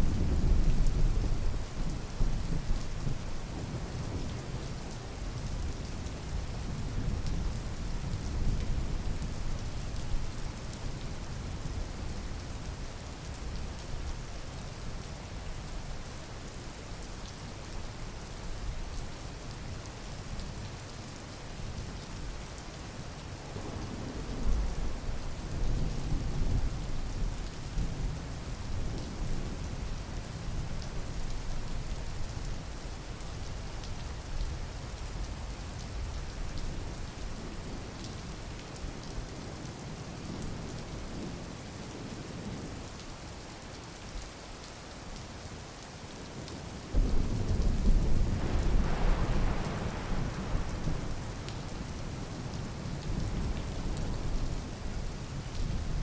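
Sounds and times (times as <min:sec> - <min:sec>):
steady rain falling: 0:00.0 - 0:56.0
thunder rumbling: 0:46.9 - 0:54.5.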